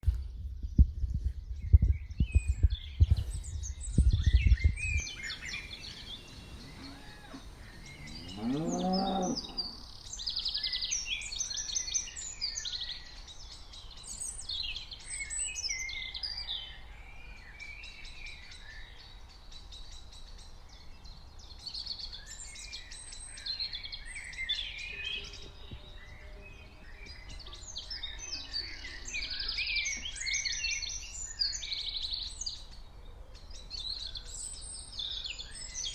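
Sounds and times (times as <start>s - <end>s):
birdsong chirping: 4.9s - 10.5s
cow mooing: 5.1s - 10.0s.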